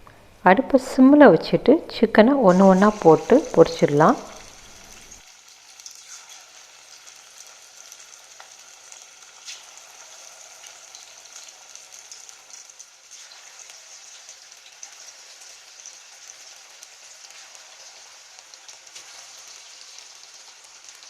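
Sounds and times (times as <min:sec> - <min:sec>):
chicken deep-frying in oil: 0:02.2 - 0:21.0
oil crackling and popping: 0:02.9 - 0:21.0.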